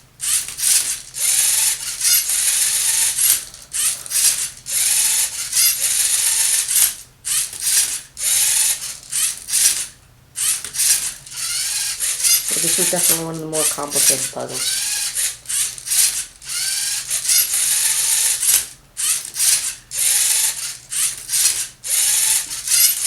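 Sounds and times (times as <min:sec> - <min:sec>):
robot motors and gears running: 0:00.2 - 0:23.0.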